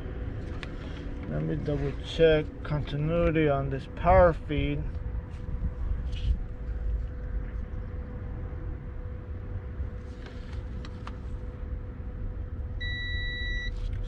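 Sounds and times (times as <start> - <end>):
low background rumble: 0.0 - 14.0
multimeter continuity beep: 12.8 - 13.8.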